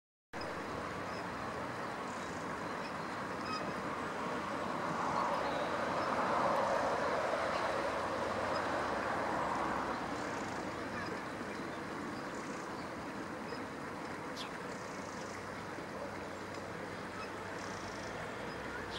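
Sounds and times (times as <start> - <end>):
road traffic noise: 0.4 - 18.9
vehicle passing: 3.9 - 12.4.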